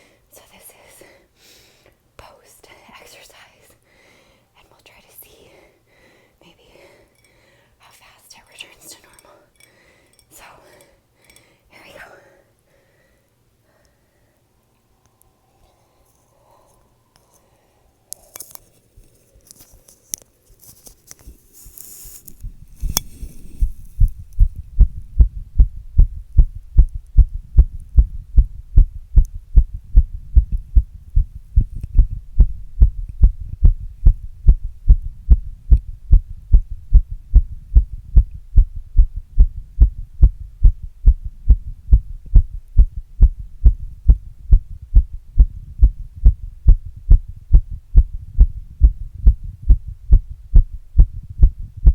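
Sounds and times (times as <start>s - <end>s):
faint scratches and clicks: 18.1s - 24.7s
heartbeat thumps: 22.4s - 51.9s.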